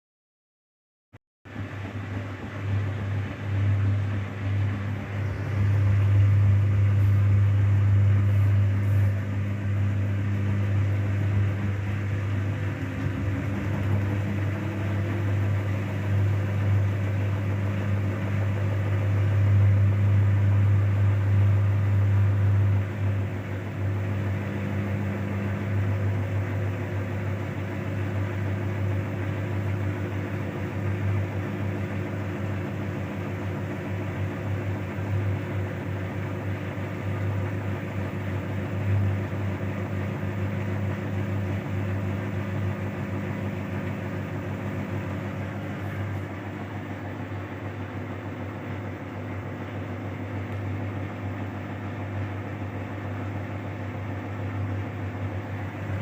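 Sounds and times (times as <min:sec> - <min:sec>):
washing machine spinning: 0:01.5 - 0:56.0.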